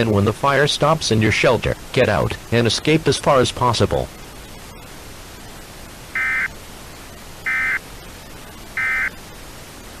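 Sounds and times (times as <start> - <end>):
steady static hiss: 0.0 - 10.0
short bursts of digital data tones: 6.1 - 6.6, 7.4 - 7.8, 8.5 - 9.2.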